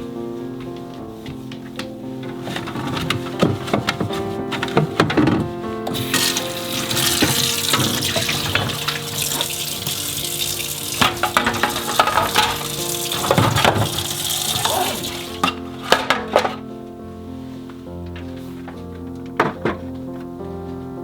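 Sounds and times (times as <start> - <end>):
soft background music: 0.0 - 21.0
tap water running into sink: 5.9 - 16.1.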